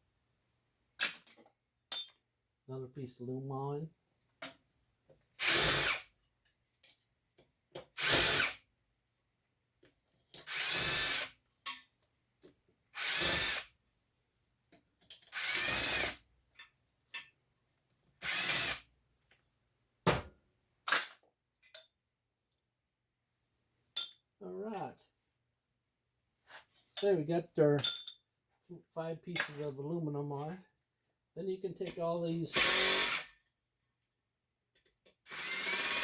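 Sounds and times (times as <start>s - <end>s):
small clicks and clinks: 1.0s - 2.2s, 6.2s - 7.4s, 16.5s - 17.4s, 20.9s - 22.0s, 24.0s - 24.2s
power drill bursts: 5.4s - 6.0s, 8.0s - 8.6s, 10.5s - 11.3s, 13.0s - 13.7s, 15.3s - 16.2s, 18.2s - 18.8s, 32.5s - 33.3s, 35.3s - 36.0s.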